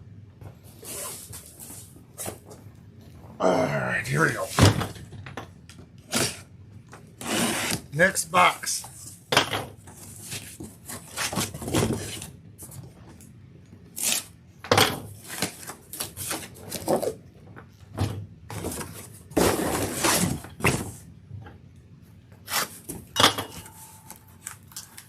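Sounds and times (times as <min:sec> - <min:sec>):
cardboard tearing: 0:07.2 - 0:07.9, 0:14.0 - 0:14.3
cardboard box rustling and scraping: 0:18.6 - 0:21.0.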